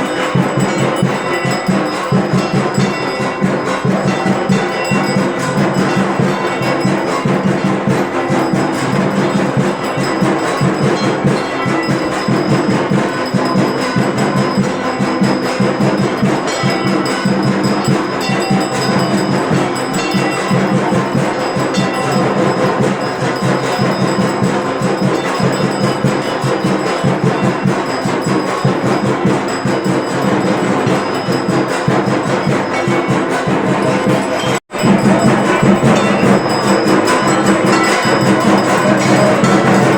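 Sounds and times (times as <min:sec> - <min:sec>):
bells and gongs ringing: 0:00.0 - 0:39.9
rapid percussion: 0:00.0 - 0:39.9.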